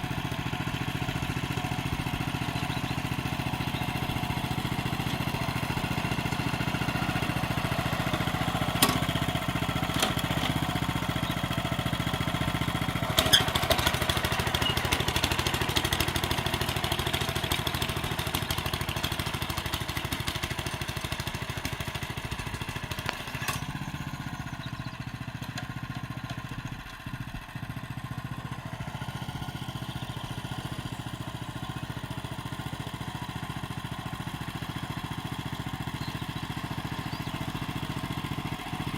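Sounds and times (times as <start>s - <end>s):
tiller engine running: 0.0s - 38.9s.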